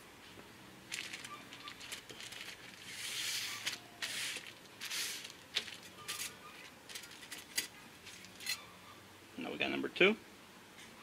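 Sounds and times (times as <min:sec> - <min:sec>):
hands rustling: 0:00.9 - 0:08.6.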